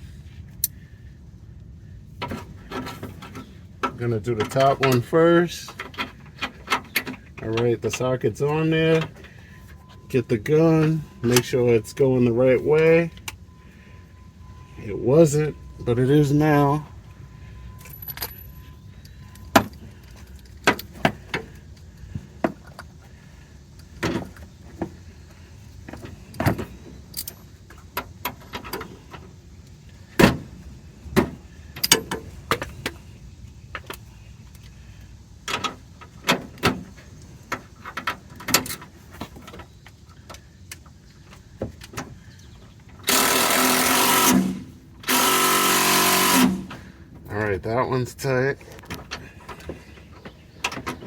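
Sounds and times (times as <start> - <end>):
impact wrench running: 43.0 - 46.9.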